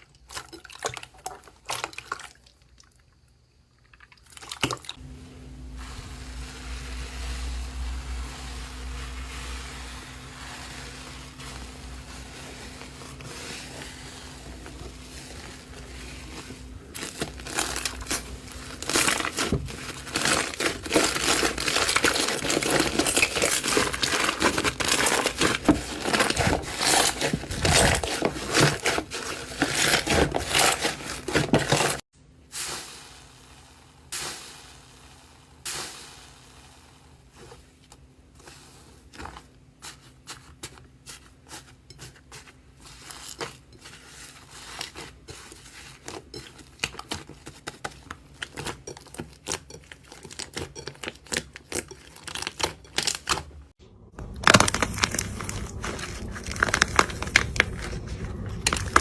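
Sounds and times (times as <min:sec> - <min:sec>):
slime crunchy crackling: 0:07.7 - 0:32.0, 0:54.2 - 0:59.0.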